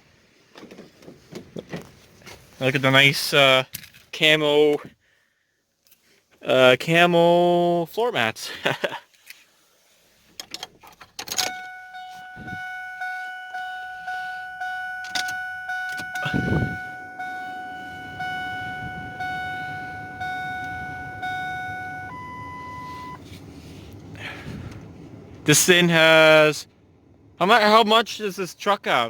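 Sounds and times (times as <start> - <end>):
truck engine cranking and idling: 9.3 - 29.0
warning chime pinging: 11.4 - 23.2.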